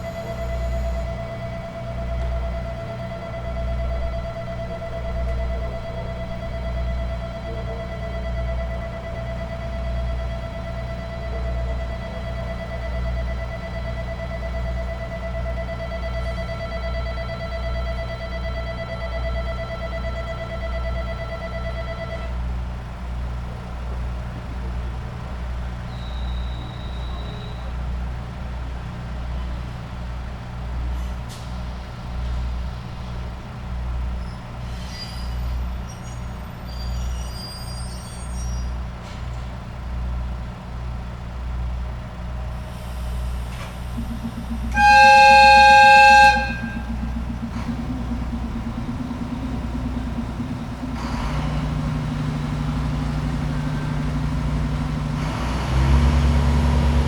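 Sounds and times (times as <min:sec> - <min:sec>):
diesel engine idling: 0:00.0 - 0:34.8, 0:35.4 - 0:57.0.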